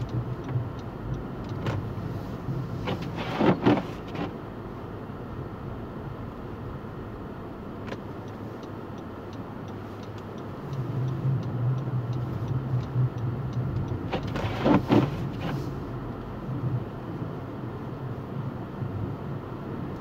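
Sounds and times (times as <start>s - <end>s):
vehicle engine humming: 0.0s - 20.0s.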